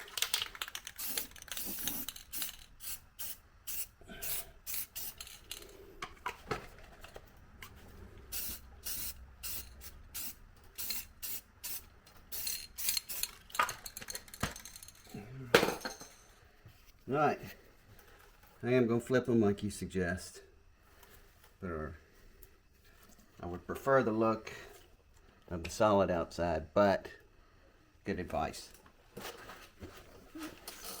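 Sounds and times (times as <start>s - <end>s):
metal tools clinking: 4.8s - 5.8s, 12.1s - 16.4s.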